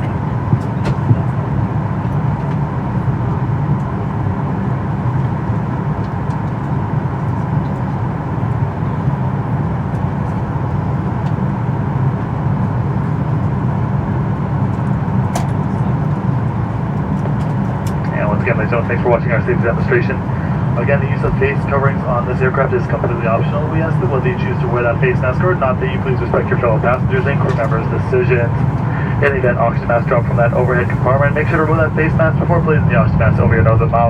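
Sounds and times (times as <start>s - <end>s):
airplane cabin drone: 0.0s - 34.0s
thin steady whine: 17.8s - 34.0s.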